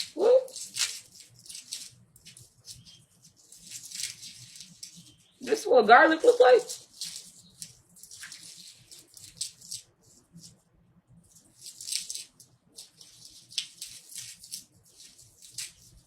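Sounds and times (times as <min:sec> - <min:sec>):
garlic skins crackling and rustling: 0:00.0 - 0:10.6, 0:11.2 - 0:16.0.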